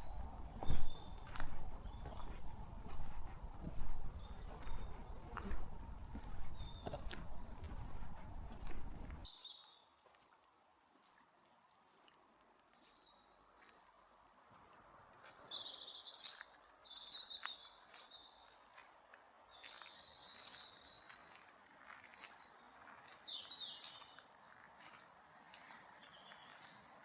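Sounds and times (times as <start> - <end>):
low rumbling noise: 0.0 - 9.2
songbirds chirping and singing: 0.0 - 9.7, 19.5 - 27.0.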